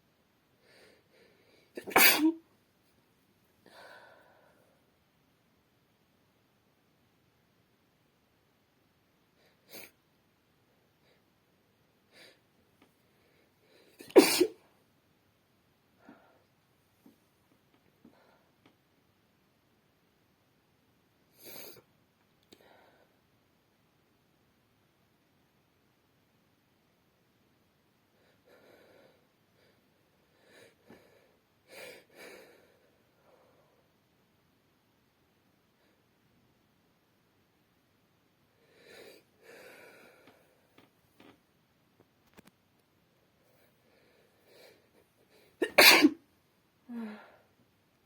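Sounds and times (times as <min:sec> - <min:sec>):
woman sneezing: 0:01.8 - 0:02.4, 0:14.0 - 0:14.6, 0:45.6 - 0:46.2.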